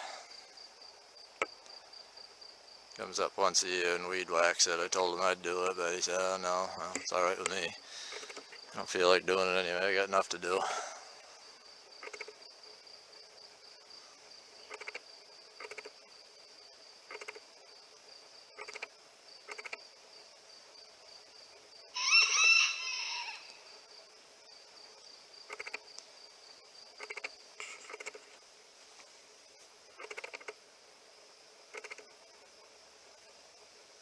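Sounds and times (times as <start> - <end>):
high insect trill: 0.0 - 34.0
rooster crowing: 21.9 - 23.6.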